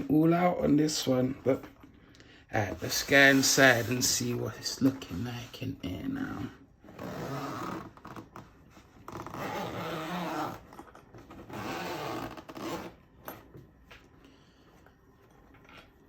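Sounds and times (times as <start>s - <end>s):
zipper pulled open: 6.8s - 13.0s.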